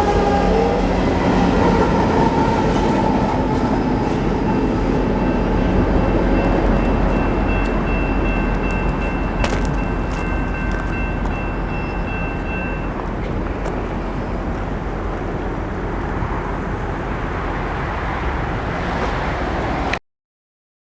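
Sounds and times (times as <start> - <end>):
train cars rumbling on rails: 0.0 - 20.0
high wheel squeal: 3.7 - 14.8.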